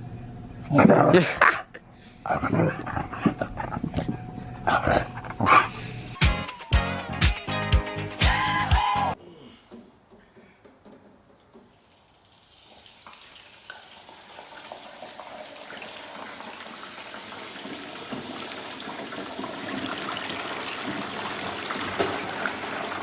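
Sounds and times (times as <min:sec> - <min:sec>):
small clicks and splashes: 0:10.8 - 0:14.0
water pouring: 0:11.3 - 0:23.0.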